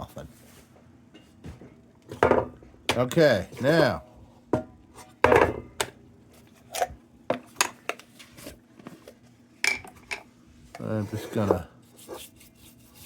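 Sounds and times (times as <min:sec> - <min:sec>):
tools knocking on workbench: 0:02.2 - 0:03.2, 0:04.6 - 0:05.9.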